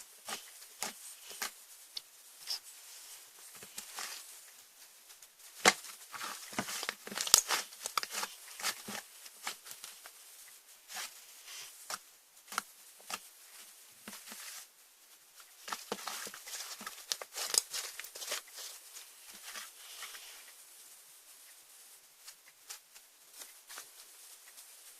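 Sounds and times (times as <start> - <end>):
slime squishing: 5.6 - 10.1, 15.6 - 18.8.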